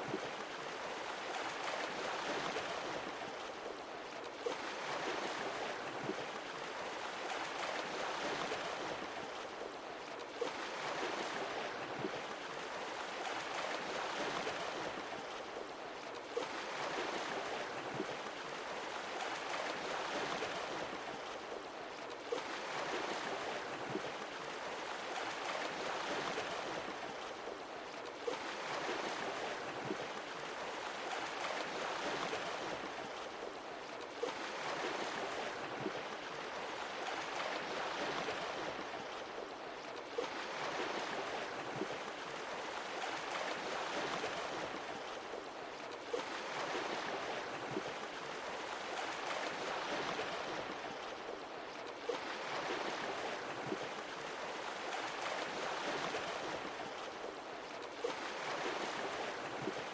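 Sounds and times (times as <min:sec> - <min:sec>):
sea waves washing ashore: 0:58.0 - 0:59.9.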